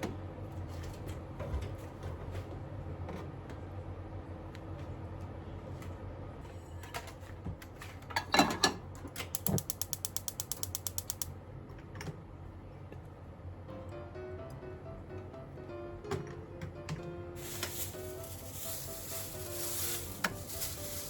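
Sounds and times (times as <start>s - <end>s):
ratchet-like clicks: 9.3s - 11.3s.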